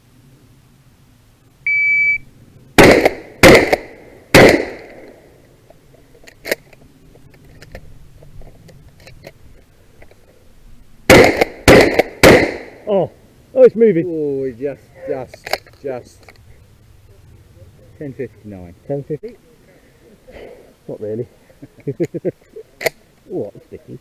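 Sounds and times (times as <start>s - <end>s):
shot timer beep: 1.7s - 2.2s
shotgun blasts: 2.8s - 5.2s, 11.1s - 12.9s.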